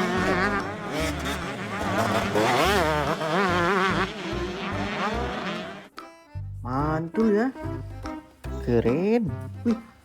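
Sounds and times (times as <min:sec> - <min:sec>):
motorbike engine revving: 0:00.0 - 0:05.9
background music with bass line: 0:00.0 - 0:10.0.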